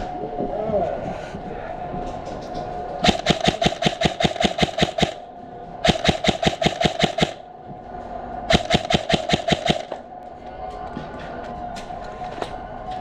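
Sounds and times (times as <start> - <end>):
airsoft rifle firing bursts: 3.0 - 7.5, 8.5 - 10.0.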